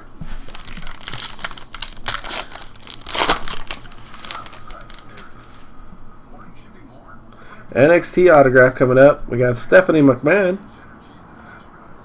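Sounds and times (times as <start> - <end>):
wrapper tearing and crinkling: 0.4 - 5.3.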